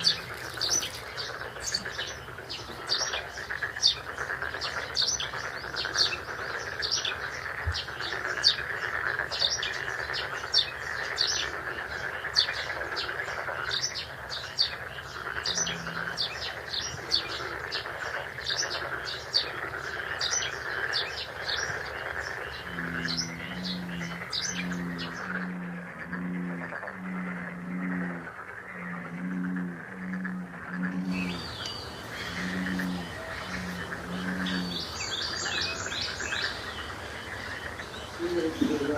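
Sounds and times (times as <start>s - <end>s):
repeated cooing call: 0.0s - 2.2s, 15.4s - 16.5s, 22.2s - 38.9s
background hiss: 0.0s - 38.9s
small birds chirping: 0.0s - 38.9s.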